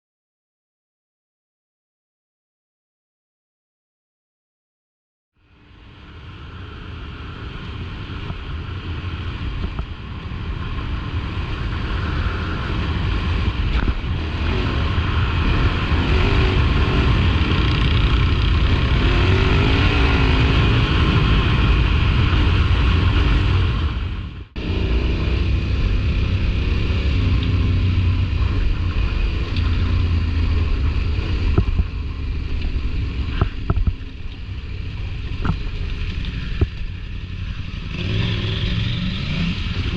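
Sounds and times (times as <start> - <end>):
motorcycle engines running: 5.5 - 39.9.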